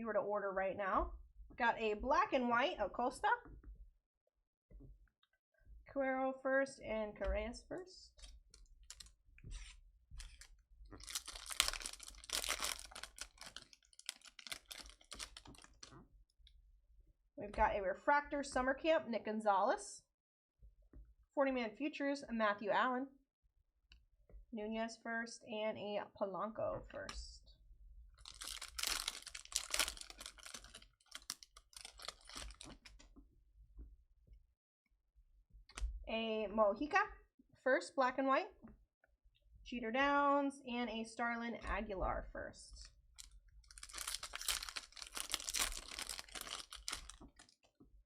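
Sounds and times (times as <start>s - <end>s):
foil wrapper tearing and crinkling: 8.9s - 9.1s, 10.2s - 15.9s, 28.2s - 32.9s, 43.2s - 47.6s
card pack crackling and clicking: 10.2s - 15.9s, 28.2s - 32.9s, 43.2s - 47.5s.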